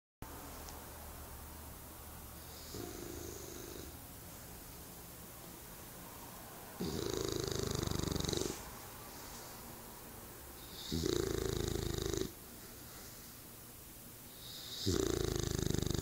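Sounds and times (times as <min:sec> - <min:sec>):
quiet breathing: 0:02.2 - 0:04.9, 0:05.8 - 0:13.7, 0:14.3 - 0:16.0
dog snoring: 0:02.4 - 0:04.0, 0:06.8 - 0:08.7, 0:10.6 - 0:12.4, 0:14.3 - 0:16.0.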